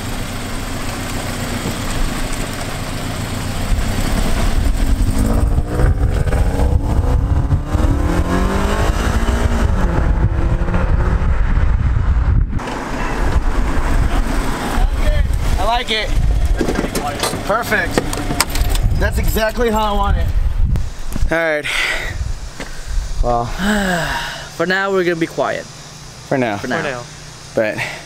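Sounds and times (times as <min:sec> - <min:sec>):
car engine accelerating: 0:00.0 - 0:19.5.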